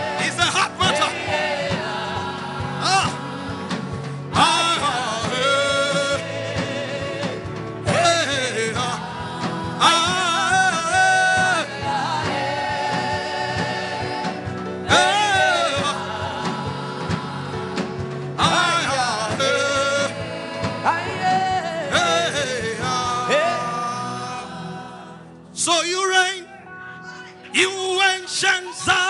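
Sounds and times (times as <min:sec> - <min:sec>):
instrumental backing with beat: 0:00.0 - 0:25.6
person singing gospel: 0:00.0 - 0:29.0.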